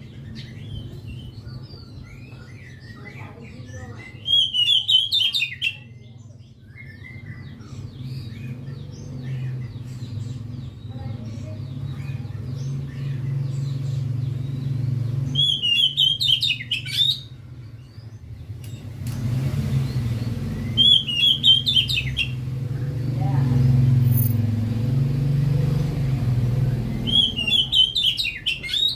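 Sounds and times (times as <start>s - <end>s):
bird singing whistled notes: 3.8s - 10.8s, 11.8s - 18.2s, 19.8s - 23.1s, 26.8s - 28.9s.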